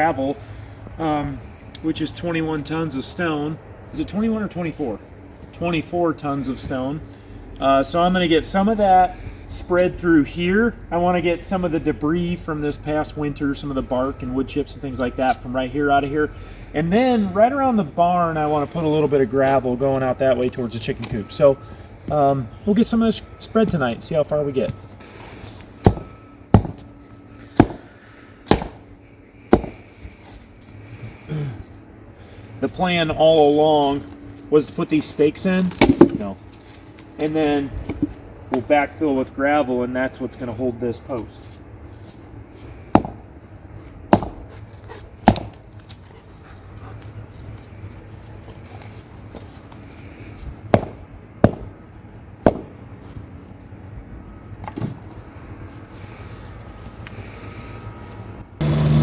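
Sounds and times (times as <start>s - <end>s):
low steady hum: 0.0s - 59.0s
hammer striking wooden stakes: 25.8s - 26.9s, 27.5s - 28.9s, 29.5s - 29.8s, 35.8s - 36.3s, 42.9s - 43.2s, 44.1s - 44.4s, 45.2s - 45.6s, 50.7s - 51.7s, 52.4s - 52.8s.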